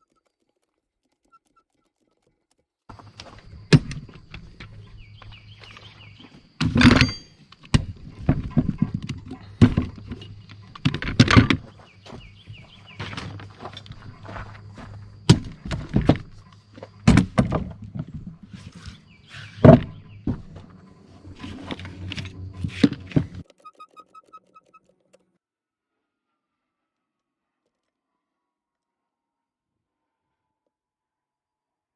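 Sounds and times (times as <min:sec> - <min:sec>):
hand tools knocking and clanking: 0:03.0 - 0:23.4.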